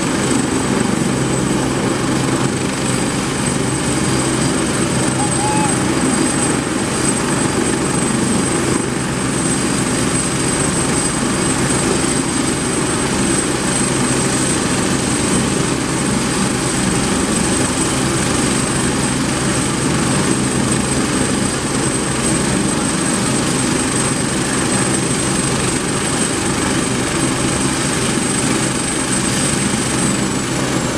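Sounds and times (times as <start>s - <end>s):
helicopter rotors and engines: 0.0s - 30.9s
high turbine whine: 2.0s - 8.8s.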